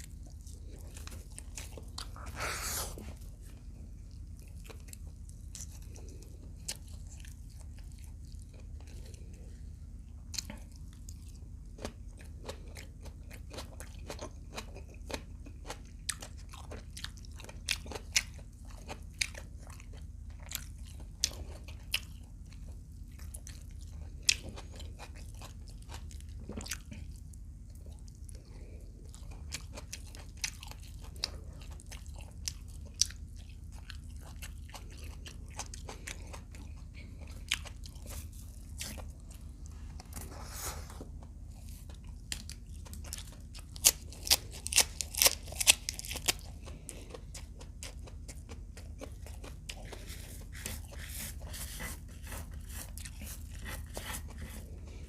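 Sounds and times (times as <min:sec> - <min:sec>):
crunching and chewing food: 0:00.0 - 0:55.0
steady low hum: 0:00.0 - 0:55.0.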